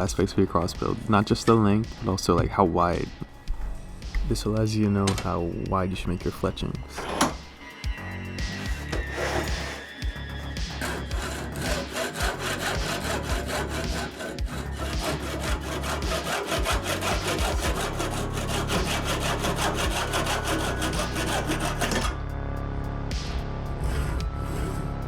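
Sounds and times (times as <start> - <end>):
hand saw cutting wood: 8.5 - 22.2, 23.8 - 25.0.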